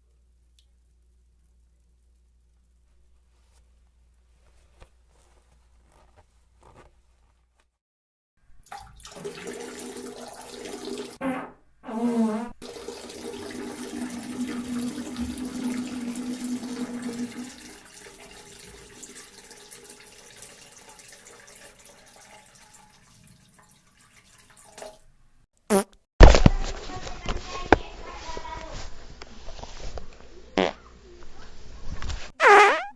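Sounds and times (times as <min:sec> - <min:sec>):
fart: 0:11.2 - 0:12.6, 0:25.7 - 0:26.0, 0:30.6 - 0:30.9, 0:32.4 - 0:32.9.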